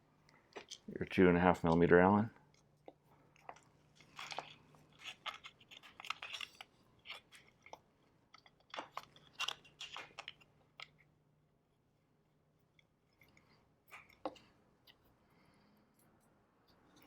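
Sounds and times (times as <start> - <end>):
clicks and scrapes of screws: 3.3 - 11.0.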